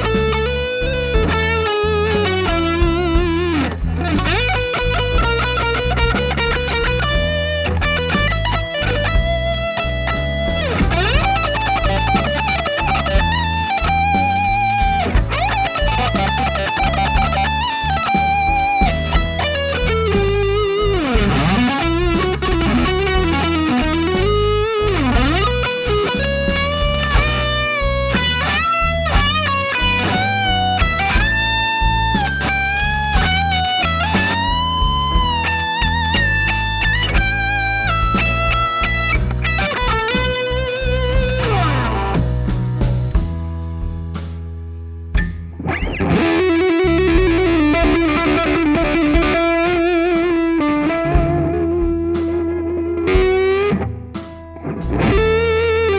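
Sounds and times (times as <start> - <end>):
distorted electric guitar lead: 0.0 - 44.2, 45.2 - 55.9
blues backing track: 0.0 - 55.9.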